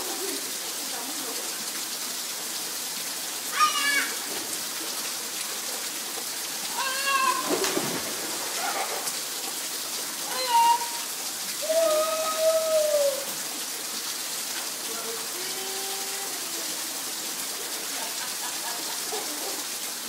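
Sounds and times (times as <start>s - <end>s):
steady rain hiss: 0.0s - 20.0s
short high-pitched cries: 6.7s - 7.6s, 10.3s - 13.2s.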